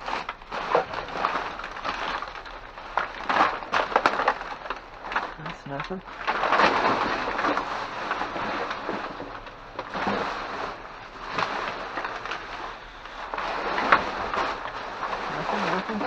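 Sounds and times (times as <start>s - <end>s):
rummaging through cardboard boxes: 0.0s - 16.0s.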